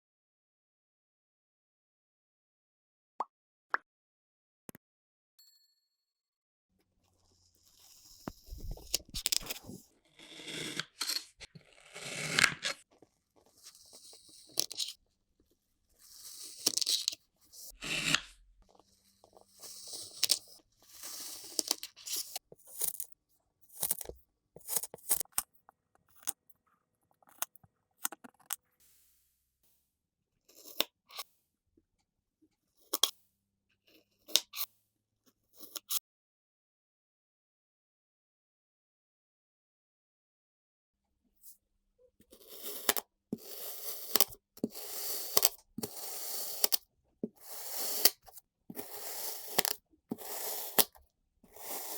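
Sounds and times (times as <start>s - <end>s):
sand being cut and squished: 7.6s - 15.0s, 16.0s - 18.4s, 19.0s - 23.1s, 42.3s - 51.9s.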